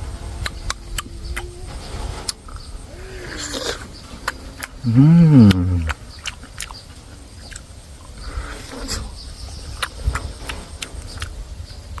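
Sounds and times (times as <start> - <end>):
chewing crunchy fruit: 0.3 - 12.0
wet mouth smacks: 5.4 - 6.8.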